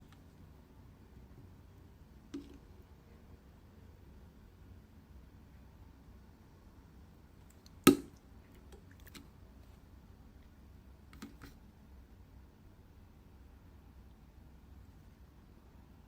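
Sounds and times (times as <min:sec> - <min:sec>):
slime popping: 0:07.6 - 0:08.2.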